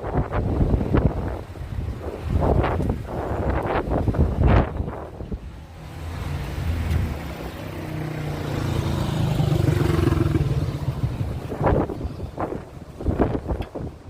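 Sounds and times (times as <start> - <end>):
wind buffeting microphone: 0.0 - 14.0
vehicle engine running: 5.6 - 13.6.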